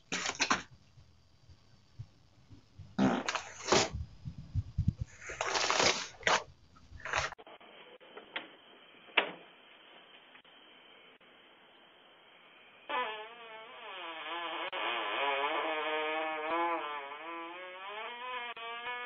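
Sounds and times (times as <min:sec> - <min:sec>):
farting: 0:03.0 - 0:04.0, 0:12.9 - 0:19.0.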